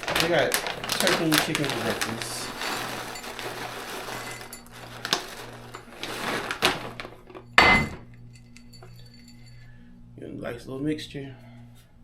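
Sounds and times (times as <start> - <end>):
utensil scraping a dish: 2.4 - 7.0.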